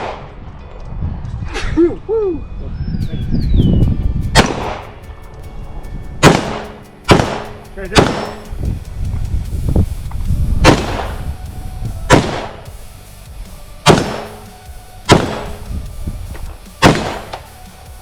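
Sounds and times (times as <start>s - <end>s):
gunshots with echo: 0.0s - 0.3s, 4.4s - 5.0s, 6.2s - 8.5s, 10.6s - 11.3s, 12.1s - 12.7s, 13.8s - 14.5s, 15.1s - 15.7s, 16.8s - 17.4s.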